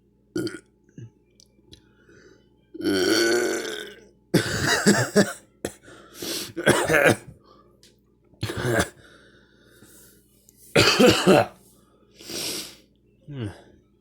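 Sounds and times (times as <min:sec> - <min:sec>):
man burping: 0:00.4 - 0:00.6, 0:02.8 - 0:05.4, 0:06.6 - 0:07.3, 0:08.4 - 0:08.9, 0:10.8 - 0:11.5.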